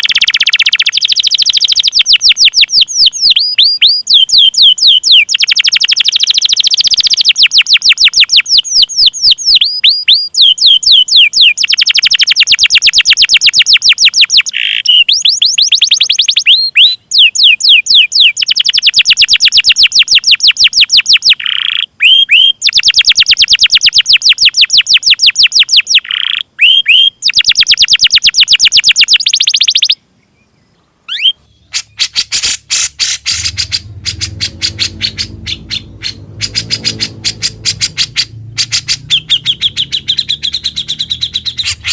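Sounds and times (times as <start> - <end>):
bird whistled notes: 0.0 - 30.0, 31.1 - 41.9
bird chirping rapidly: 0.0 - 41.9
low hum: 32.6 - 41.9.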